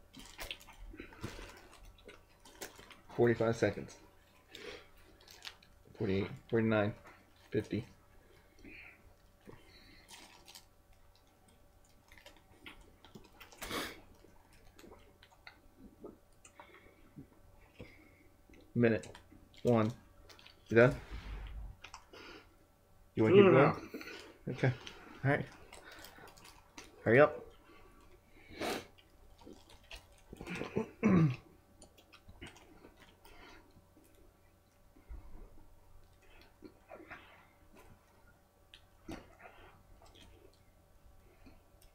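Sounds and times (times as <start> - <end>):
person chewing food: 8.3 - 19.6, 24.0 - 31.0, 31.6 - 41.9
short rush of noise: 20.9 - 21.8
person chewing: 28.0 - 30.9.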